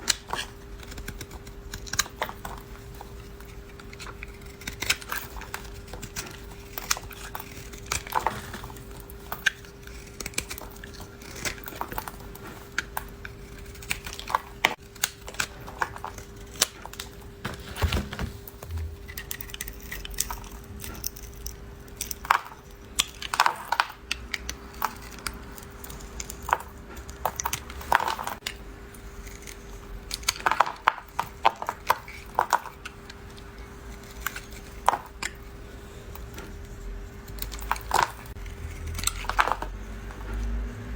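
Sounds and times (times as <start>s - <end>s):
knife cutting dry soap: 0.0s - 21.4s.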